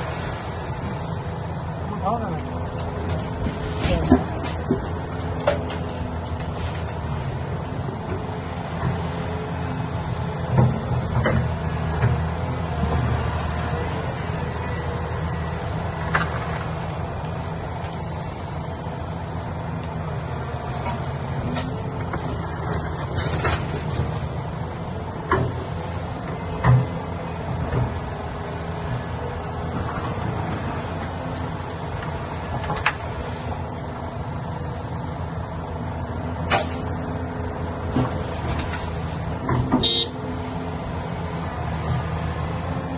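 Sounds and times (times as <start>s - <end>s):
construction machine engine running: 0.0s - 42.9s.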